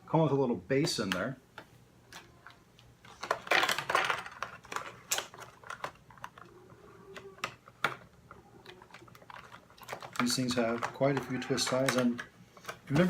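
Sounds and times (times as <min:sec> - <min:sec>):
sharp plastic clicks and crackles: 0:01.1 - 0:06.5, 0:07.2 - 0:13.0
plastic packaging crinkling: 0:03.0 - 0:06.5, 0:08.6 - 0:13.0.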